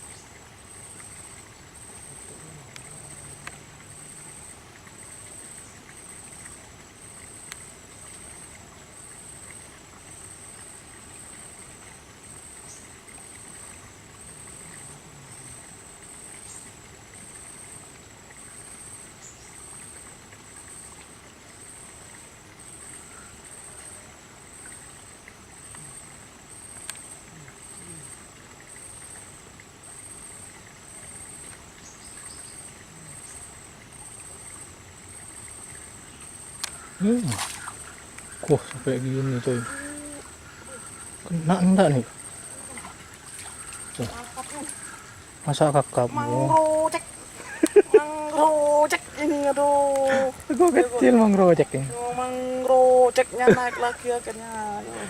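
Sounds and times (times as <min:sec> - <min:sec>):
steady hiss: 0:00.0 - 0:55.0
insect calling in pulses: 0:25.6 - 0:55.0.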